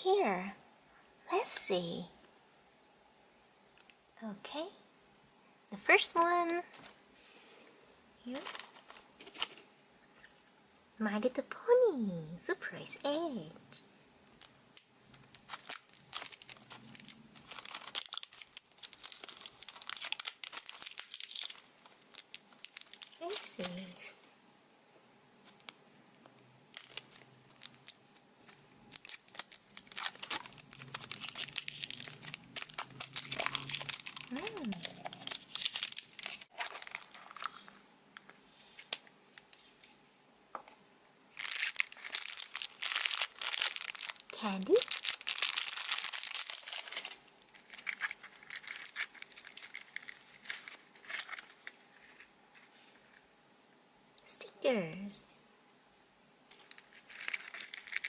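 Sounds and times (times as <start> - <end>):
packaging crinkling: 8.3 - 9.7, 14.3 - 24.0, 26.7 - 39.6, 41.3 - 53.2, 56.5 - 58.0.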